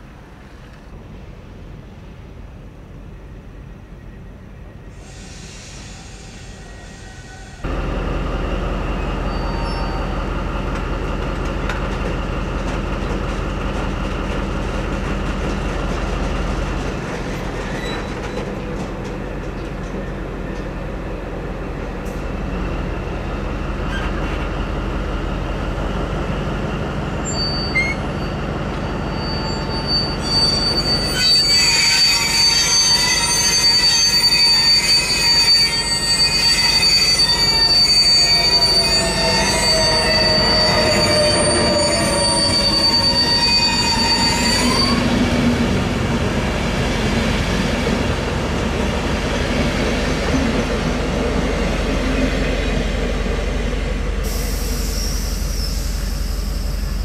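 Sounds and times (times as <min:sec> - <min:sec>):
brake squeal: 0:04.2 - 0:07.8, 0:08.8 - 0:10.3, 0:17.6 - 0:18.6, 0:23.8 - 0:24.5, 0:26.8 - 0:45.4, 0:54.2 - 0:57.0
locomotive engine drone: 0:07.6 - 0:16.8.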